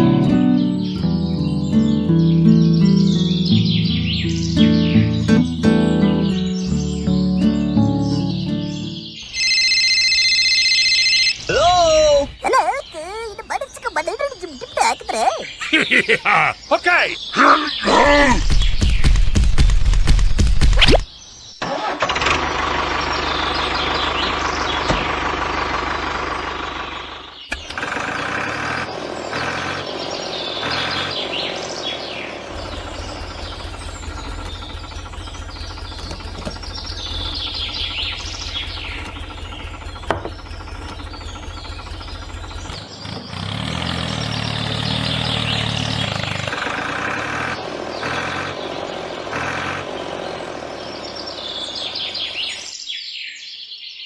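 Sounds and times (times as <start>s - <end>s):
birds chirping: 0.0s - 54.0s
small engine running: 21.7s - 52.6s.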